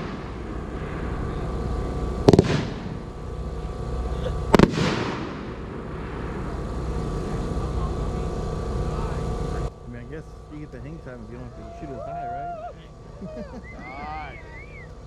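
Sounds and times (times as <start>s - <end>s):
firework bangs with echo: 2.2s - 3.2s, 4.5s - 6.5s.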